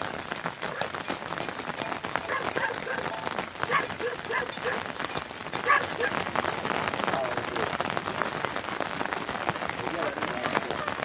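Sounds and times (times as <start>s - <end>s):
rain falling: 0.0s - 11.0s.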